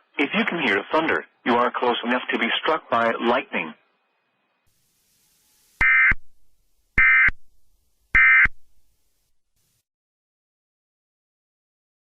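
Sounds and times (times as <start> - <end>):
buzzy digital squawks: 5.6 - 6.2, 7.0 - 7.4, 8.2 - 8.6.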